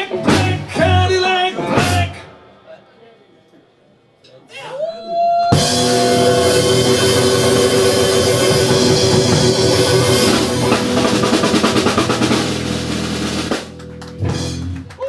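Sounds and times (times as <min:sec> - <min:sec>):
blues-rock band chord: 0:05.6 - 0:14.8
fast drum roll: 0:05.6 - 0:14.9.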